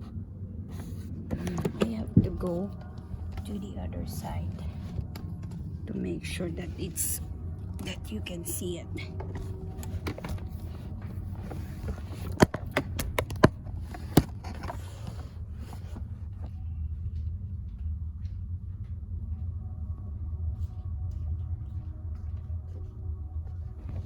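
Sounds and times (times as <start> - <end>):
steady low rumble: 0.0 - 24.0
handling clicks and knocks: 9.2 - 15.2.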